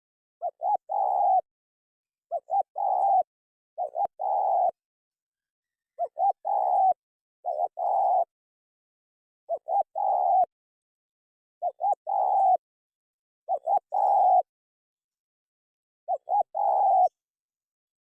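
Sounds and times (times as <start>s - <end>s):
dove cooing: 0.4s - 1.5s, 2.3s - 4.8s, 6.0s - 8.3s, 9.5s - 10.5s, 11.6s - 12.6s, 13.5s - 14.5s, 16.1s - 17.2s.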